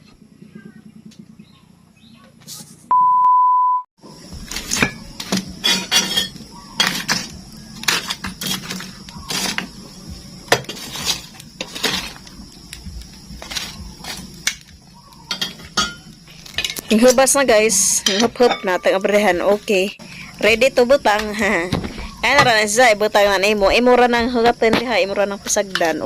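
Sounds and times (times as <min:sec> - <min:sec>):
steady single-pitched beep: 0:02.9 - 0:03.8
dishes and utensils clinking: 0:04.7 - 0:09.7, 0:10.5 - 0:12.1, 0:15.3 - 0:17.2, 0:18.0 - 0:19.0.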